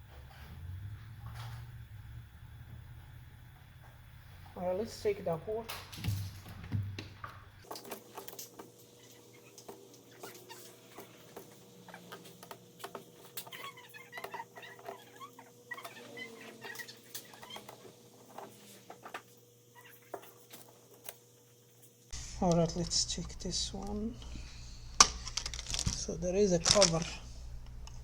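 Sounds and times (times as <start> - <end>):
faint squeaks: 8.9 - 20.7.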